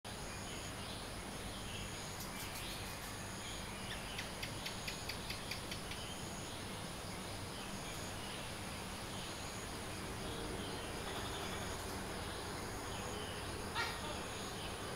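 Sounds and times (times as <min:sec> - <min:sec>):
bird chirps: 0:01.6 - 0:06.6.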